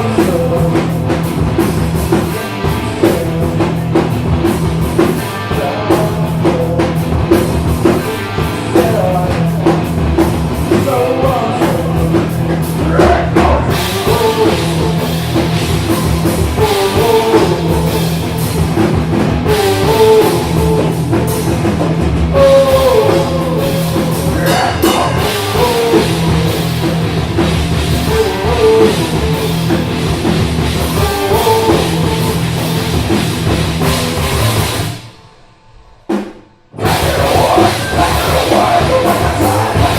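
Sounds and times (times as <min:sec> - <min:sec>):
drum kit: 0:00.0 - 0:39.9
rock band playing: 0:00.0 - 0:39.9
wavering lead melody: 0:24.3 - 0:26.6.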